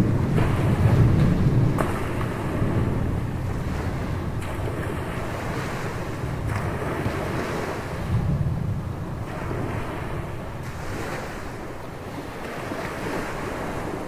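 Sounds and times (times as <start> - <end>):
surf washing onto beach: 0.0 - 14.0
wind blowing across microphone: 0.0 - 14.0.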